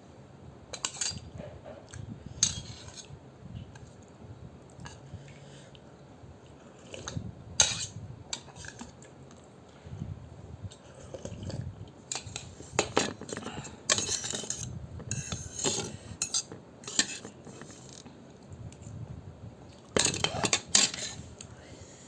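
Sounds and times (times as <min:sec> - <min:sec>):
utensils clinking against a bowl: 0:00.8 - 0:03.1, 0:12.1 - 0:18.0, 0:19.8 - 0:21.2.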